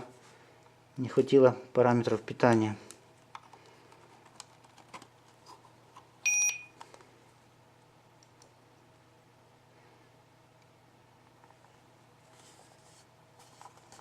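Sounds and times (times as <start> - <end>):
electronic alarm beep: 6.2 - 6.7.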